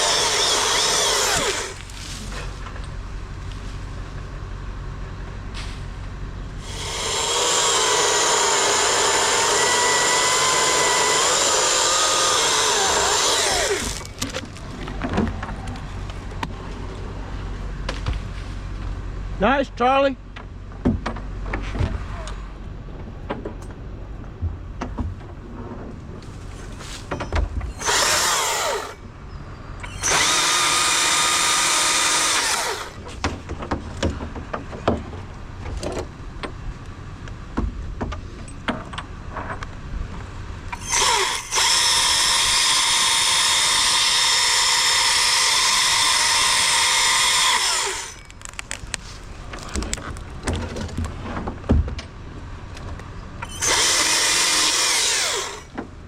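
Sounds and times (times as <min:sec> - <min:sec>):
chainsaw cutting wood: 0:00.0 - 0:02.2, 0:06.6 - 0:14.3, 0:27.7 - 0:29.0, 0:29.8 - 0:33.1, 0:40.8 - 0:49.8, 0:53.4 - 0:55.8.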